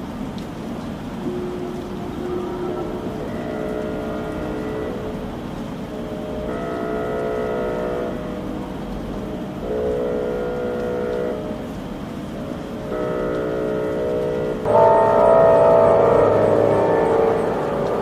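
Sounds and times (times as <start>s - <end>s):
multi-tone air horn blasts: 12.9s - 18.0s.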